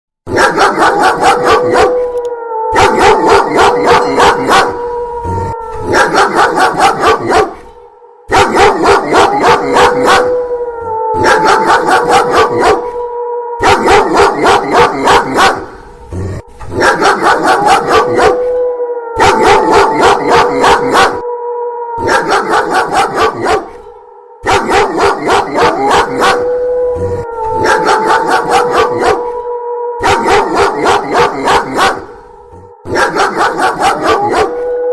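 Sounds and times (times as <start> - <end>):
dog barking: 0.3 - 2.1, 2.7 - 4.8, 5.8 - 7.7, 8.3 - 10.3, 11.2 - 13.0, 13.6 - 15.8, 16.7 - 18.5, 19.2 - 21.2, 22.0 - 23.8, 24.4 - 26.5, 27.6 - 29.4, 30.0 - 32.2, 32.8 - 34.7
wolf howling: 0.3 - 34.9.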